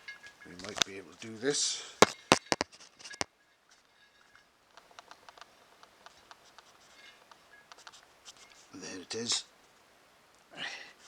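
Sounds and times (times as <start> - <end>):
string scratching and rustling: 0.0 - 9.8.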